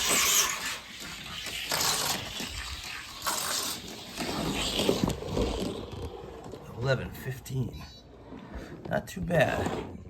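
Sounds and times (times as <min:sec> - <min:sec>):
toy car rolling on plastic track: 0:00.0 - 0:07.3.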